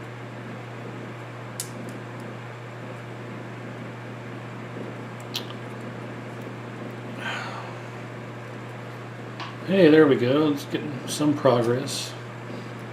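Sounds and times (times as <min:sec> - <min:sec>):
fan whir with low hum: 0:00.0 - 0:12.9.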